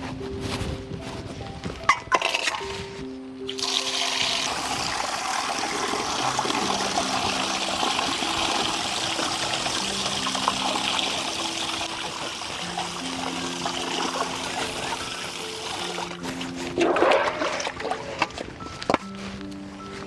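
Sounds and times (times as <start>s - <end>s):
soft background music: 0.0s - 20.0s
water rushing: 3.6s - 18.3s.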